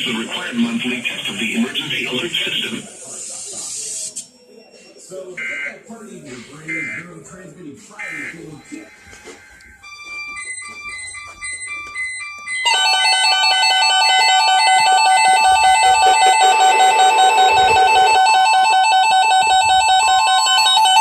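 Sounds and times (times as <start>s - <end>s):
two-tone alert signal: 9.8s - 21.0s
short beeping tones: 14.2s - 21.0s.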